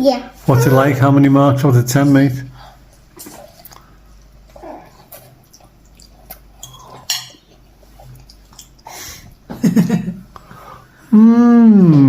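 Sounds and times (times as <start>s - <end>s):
baby vocal sound: 0.4s - 1.0s, 4.5s - 5.3s.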